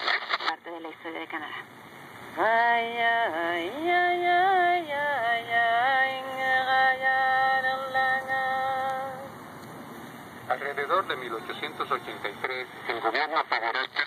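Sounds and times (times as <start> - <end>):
shortwave radio hiss: 0.0 - 14.0
person singing long notes: 2.4 - 9.3.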